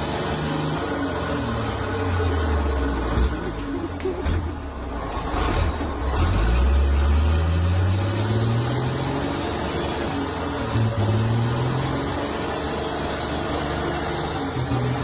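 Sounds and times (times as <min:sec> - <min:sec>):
truck engine under load: 0:00.0 - 0:15.0.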